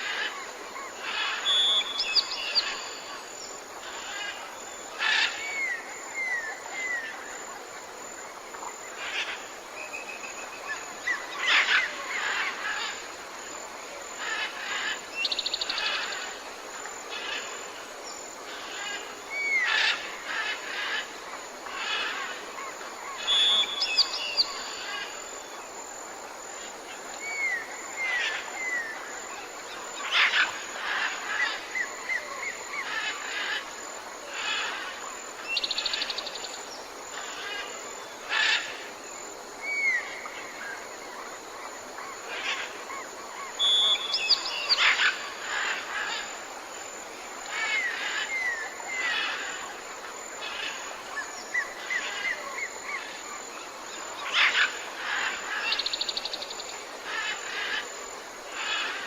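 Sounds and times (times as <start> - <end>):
songbirds singing and chirping: 1.0 - 3.1, 42.4 - 46.3.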